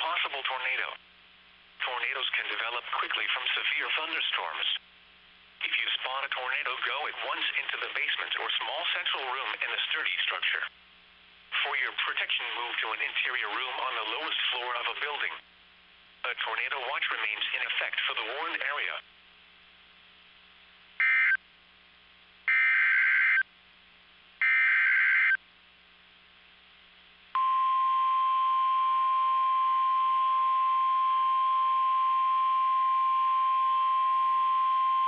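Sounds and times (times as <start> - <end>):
screechy digital data tones: 22.5 - 23.4, 24.4 - 25.4
steady warning alarm tone: 22.5 - 23.4, 24.4 - 25.4, 27.4 - 35.0.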